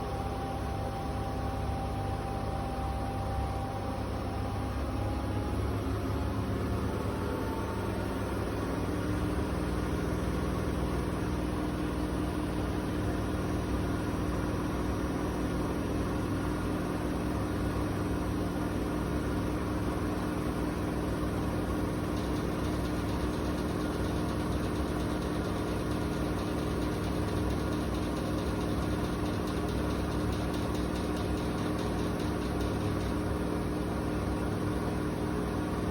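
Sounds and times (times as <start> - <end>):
washing machine spinning: 0.0 - 35.9.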